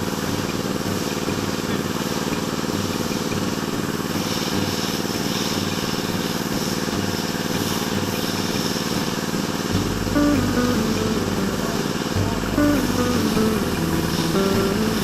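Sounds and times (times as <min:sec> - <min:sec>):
deep hum: 0:09.7 - 0:15.0.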